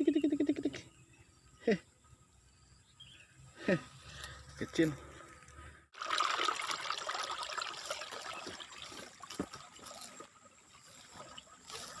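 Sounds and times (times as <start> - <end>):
water trickling and splashing: 5.2 - 12.0.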